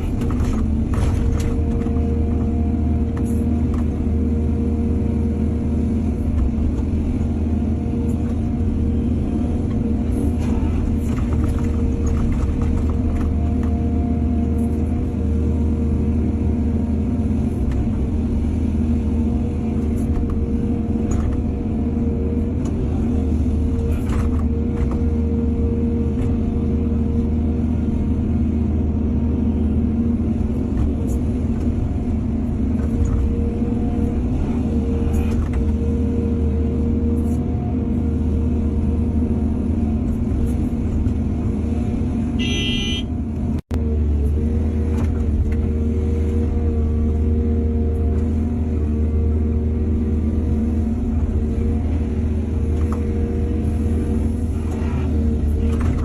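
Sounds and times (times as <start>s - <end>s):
excavator diesel engine running: 0.0s - 56.0s
short high-pitched beep: 42.4s - 43.1s.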